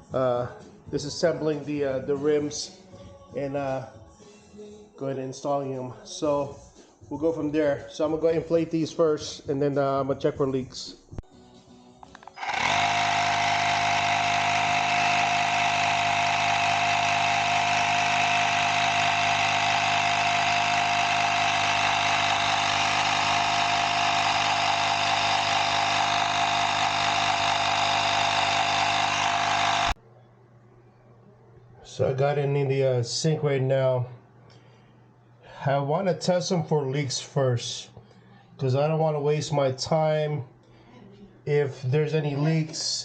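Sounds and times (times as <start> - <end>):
electric air compressor running: 12.2 - 30.0.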